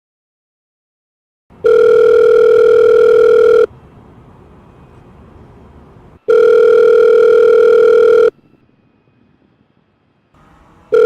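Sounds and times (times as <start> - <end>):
telephone ringback tone: 1.6 - 3.7, 6.2 - 8.4.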